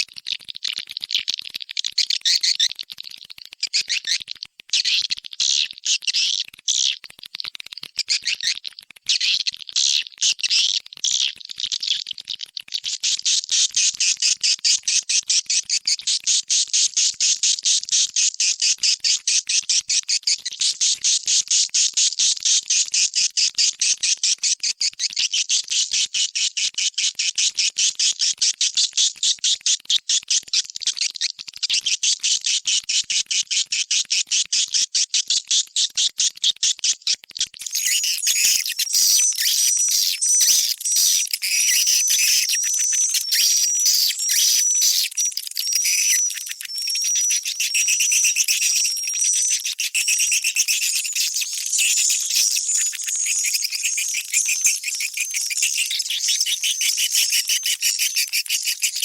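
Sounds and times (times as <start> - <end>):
swiftlets chirping: 37.6 - 59.0.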